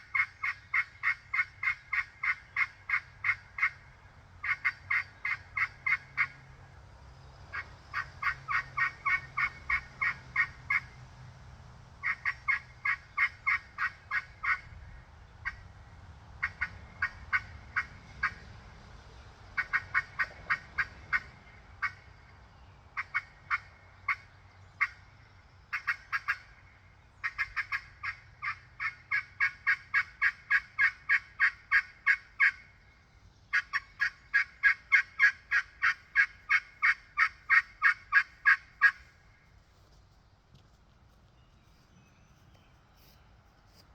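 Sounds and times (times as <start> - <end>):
turkey pot call yelping: 0.0 - 6.4, 7.5 - 11.0, 12.0 - 14.7, 16.4 - 18.4, 19.6 - 22.1, 23.0 - 25.0, 25.7 - 32.8, 33.5 - 39.4.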